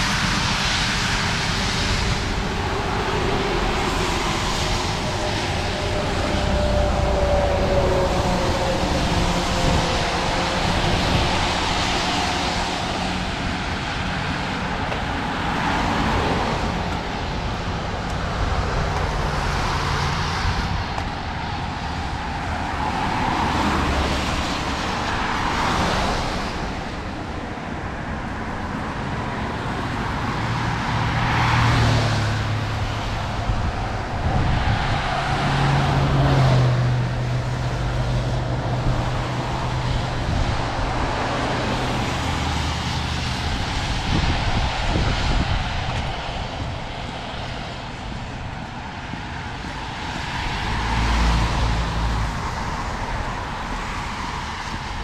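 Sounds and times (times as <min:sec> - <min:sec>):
heavy engine humming: 0:00.0 - 0:30.9
vehicles passing on wet road: 0:00.0 - 0:55.0.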